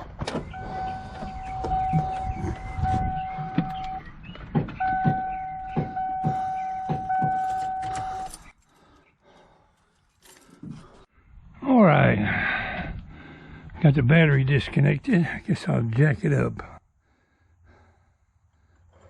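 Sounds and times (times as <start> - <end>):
dashboard warning tone: 0.5 - 4.1, 4.8 - 8.5.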